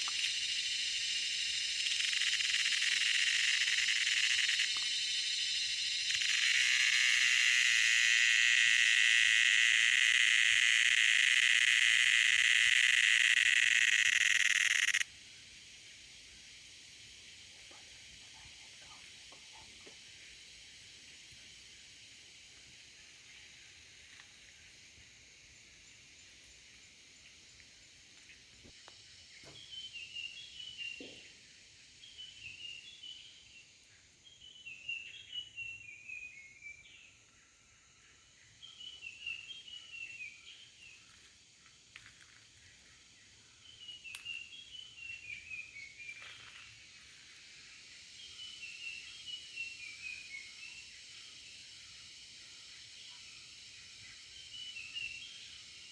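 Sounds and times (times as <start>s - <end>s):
bird chirping: 0.0s - 15.0s
cicada buzzing drone: 0.0s - 18.5s
cicadas droning: 0.0s - 55.9s.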